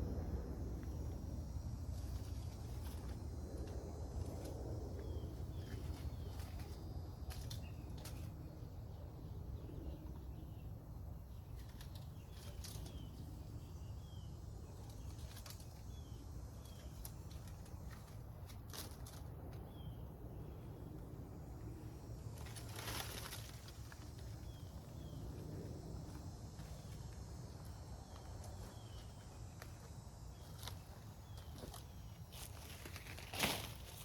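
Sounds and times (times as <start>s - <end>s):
steady low rumble: 0.0s - 34.0s
bird chirping: 5.0s - 18.1s.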